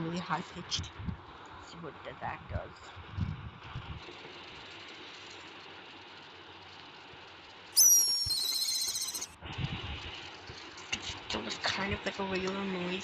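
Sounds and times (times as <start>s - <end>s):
shrill whistled bird call: 7.8s - 9.4s.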